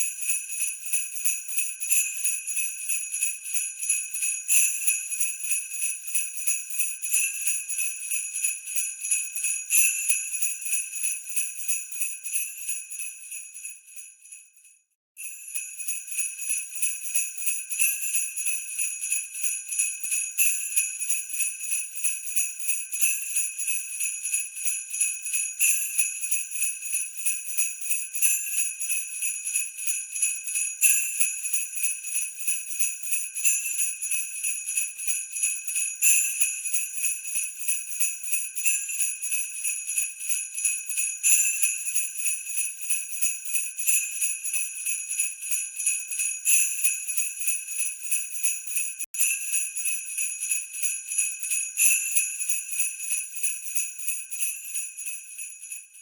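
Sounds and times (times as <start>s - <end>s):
sleigh bells jingling: 33.6s - 55.8s.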